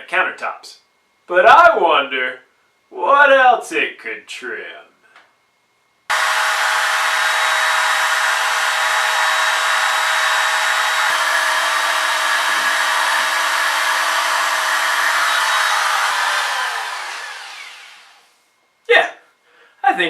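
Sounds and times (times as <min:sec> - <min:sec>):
trim router motor whine: 0:06.1 - 0:18.3.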